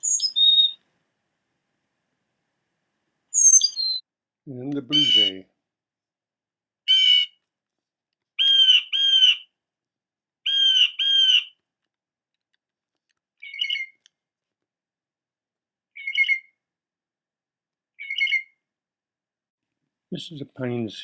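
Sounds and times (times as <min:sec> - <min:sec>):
jay squawking calls: 0:00.0 - 0:00.8, 0:04.8 - 0:05.4, 0:06.9 - 0:07.4, 0:08.4 - 0:09.5, 0:10.5 - 0:11.6
short bird calls: 0:00.0 - 0:00.8, 0:03.4 - 0:04.0, 0:04.9 - 0:05.4, 0:08.4 - 0:09.5, 0:10.5 - 0:11.6.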